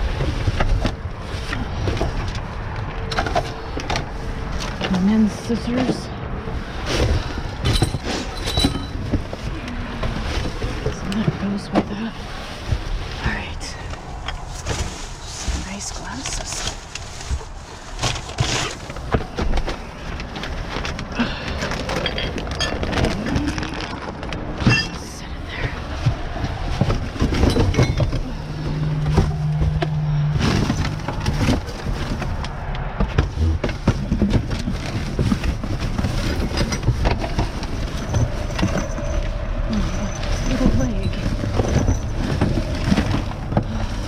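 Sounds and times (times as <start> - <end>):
trash bags rustling: 0.0 - 44.0
hard objects knocking and clattering: 6.9 - 12.0, 16.2 - 44.0.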